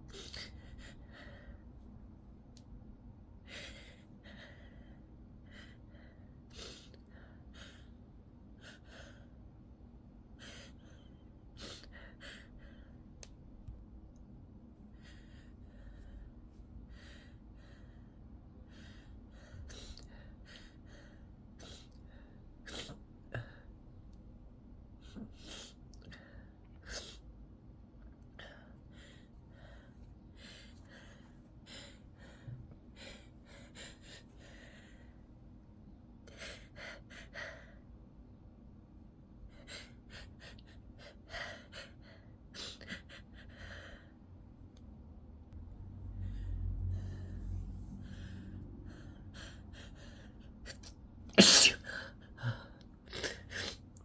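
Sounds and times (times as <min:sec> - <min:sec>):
person sneezing: 0:51.4 - 0:51.9.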